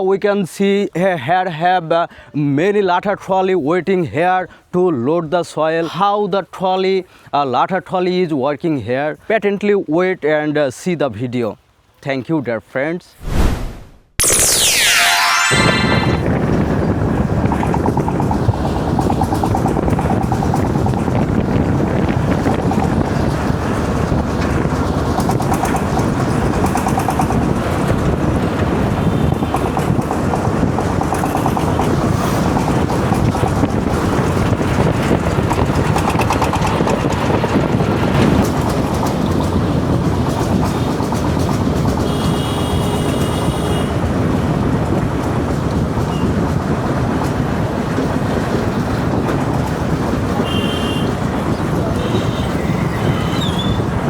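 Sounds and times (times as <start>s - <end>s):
high-pitched tone: 14.2s - 16.7s
diesel engines running: 16.3s - 54.0s.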